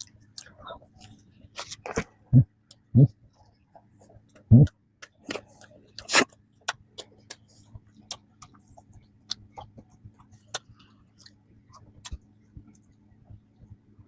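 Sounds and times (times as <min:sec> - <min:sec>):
person chewing bread: 0:00.0 - 0:13.7.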